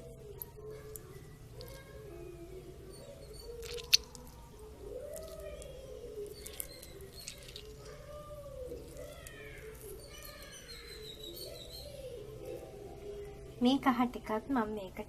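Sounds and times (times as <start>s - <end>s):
small birds chirping: 0.0s - 14.3s
dove cooing: 2.9s - 13.3s.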